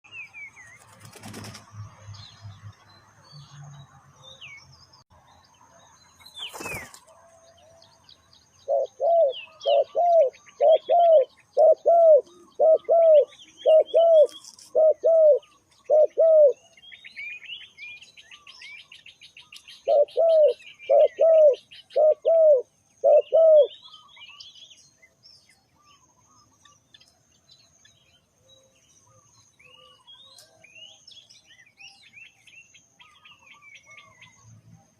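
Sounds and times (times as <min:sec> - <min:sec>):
small birds chirping faintly: 0:00.1 - 0:34.9
dove cooing: 0:08.6 - 0:16.6, 0:19.8 - 0:23.8.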